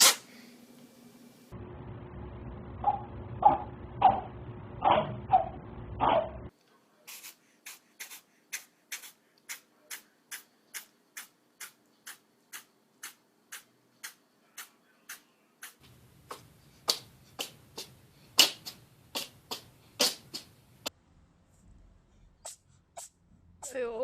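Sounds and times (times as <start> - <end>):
low background rumble: 1.5 - 6.5
cat sneezing: 17.4 - 20.5.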